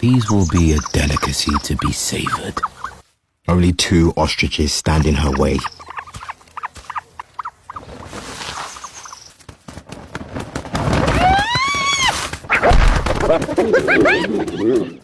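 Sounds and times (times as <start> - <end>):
scuffling: 5.2 - 15.0.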